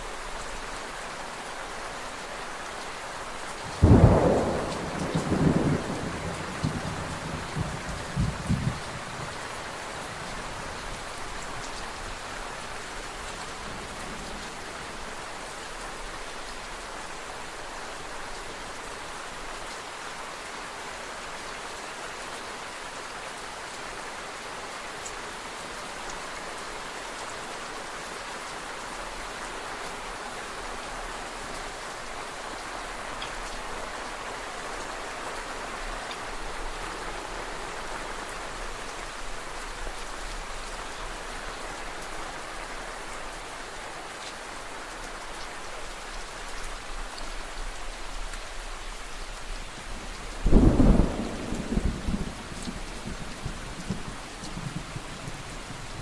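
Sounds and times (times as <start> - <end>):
steady rain falling: 0.0 - 56.0
thunder rumble: 3.8 - 9.6, 50.4 - 56.0.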